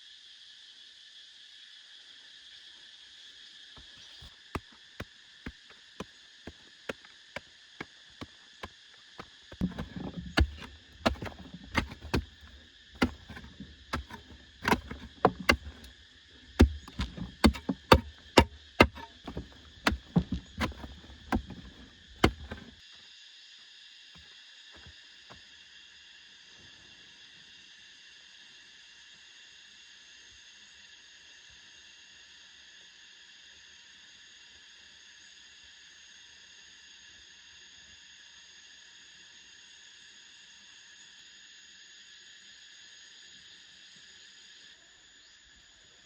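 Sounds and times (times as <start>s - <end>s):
hand tool knocks and thuds: 9.5s - 15.9s, 16.5s - 22.7s.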